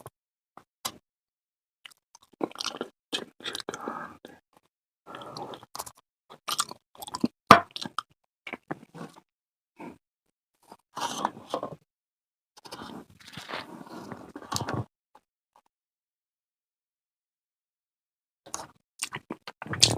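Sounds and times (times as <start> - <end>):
person chewing food: 1.9 - 4.4, 5.1 - 9.2, 18.5 - 19.9.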